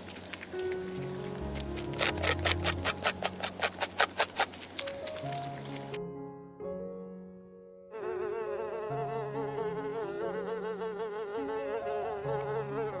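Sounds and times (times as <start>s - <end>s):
soft background music: 0.0s - 13.0s
flying insect buzzing: 7.9s - 13.0s.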